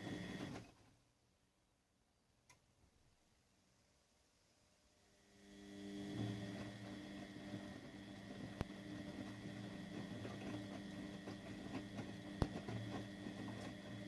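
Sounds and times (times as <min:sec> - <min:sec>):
washing machine motor humming: 0:00.0 - 0:00.8, 0:05.1 - 0:14.0.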